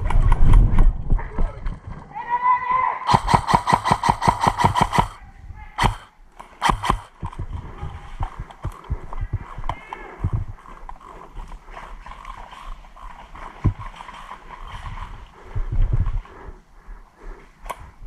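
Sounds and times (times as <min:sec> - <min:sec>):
footsteps: 0:03.1 - 0:05.2, 0:05.8 - 0:10.6.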